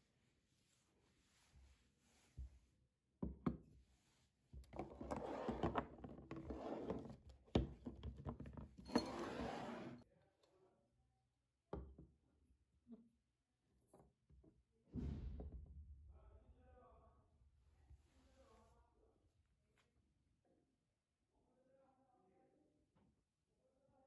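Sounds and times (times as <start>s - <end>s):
household objects clinking and knocking: 4.9s - 9.4s.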